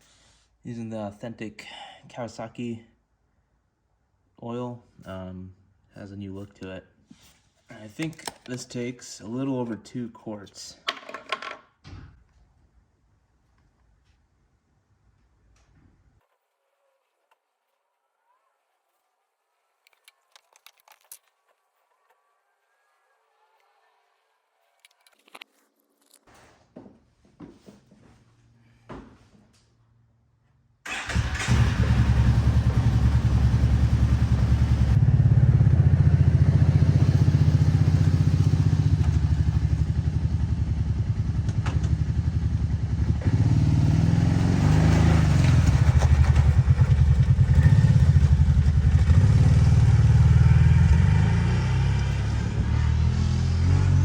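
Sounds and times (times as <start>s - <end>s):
atv engine idling: 30.9s - 51.2s.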